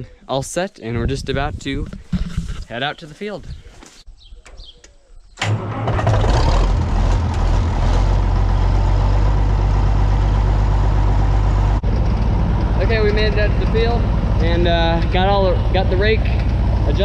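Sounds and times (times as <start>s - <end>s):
tractor engine starting and running: 5.4s - 17.0s.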